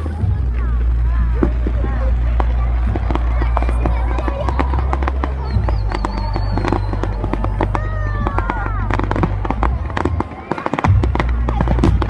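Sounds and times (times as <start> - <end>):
fireworks crackling and banging: 0.0 - 12.0
low rumble: 0.0 - 12.0
high firework whistle: 4.5 - 10.9.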